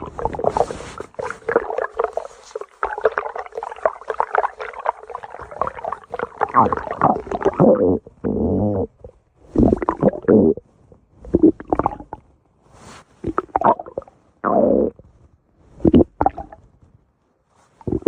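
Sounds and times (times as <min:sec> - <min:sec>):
stomach growling and gurgling: 0:00.0 - 0:12.3, 0:13.2 - 0:16.7, 0:17.8 - 0:18.0.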